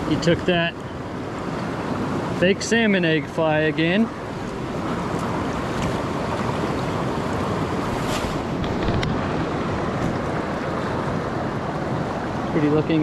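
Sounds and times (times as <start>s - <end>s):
creek rushing: 0.0s - 13.0s.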